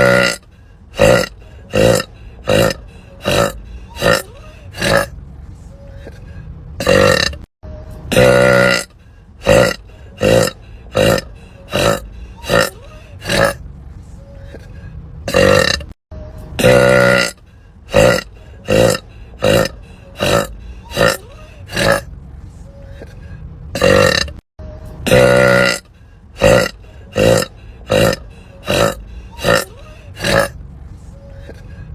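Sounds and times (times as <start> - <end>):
woman burping: 0.0 - 0.4, 1.0 - 5.1, 6.8 - 7.5, 8.1 - 13.6, 15.3 - 16.0, 16.6 - 22.0, 23.8 - 24.4, 25.0 - 25.8, 26.4 - 30.5.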